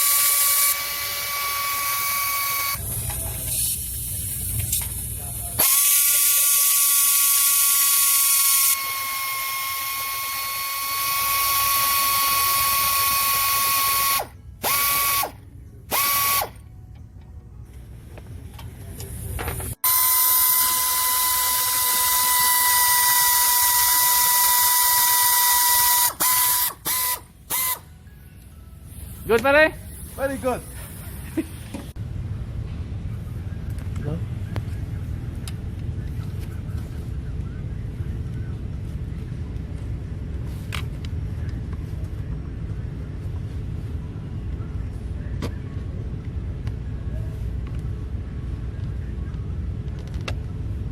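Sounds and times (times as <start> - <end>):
power tool whining: 0.0 - 2.8, 5.6 - 16.6, 19.8 - 27.9.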